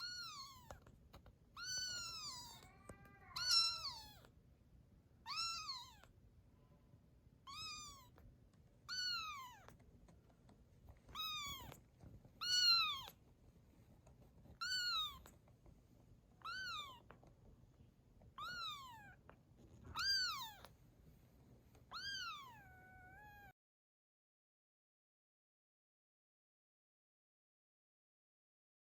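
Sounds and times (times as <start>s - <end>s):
kitten meowing: 0.0s - 0.9s, 1.5s - 4.3s, 5.2s - 6.1s, 7.4s - 8.2s, 8.8s - 9.8s, 11.1s - 11.8s, 12.4s - 13.2s, 14.6s - 15.3s, 16.4s - 17.1s, 18.4s - 19.2s, 19.9s - 20.7s, 21.9s - 23.5s.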